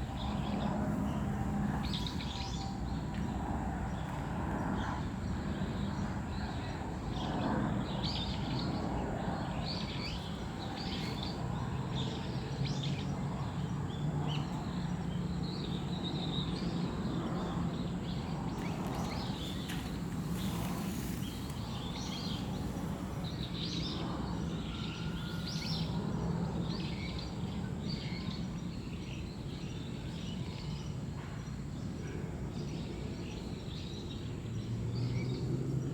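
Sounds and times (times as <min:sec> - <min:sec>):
steady low background hum: 0:00.0 - 0:35.9
birds chirping: 0:17.4 - 0:26.1.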